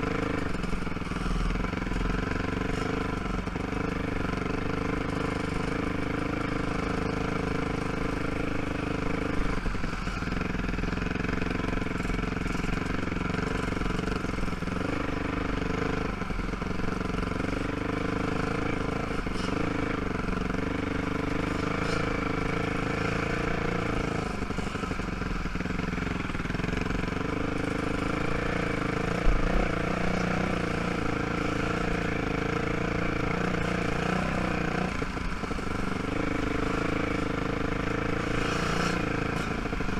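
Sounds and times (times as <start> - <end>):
quad engine running: 0.0 - 39.9.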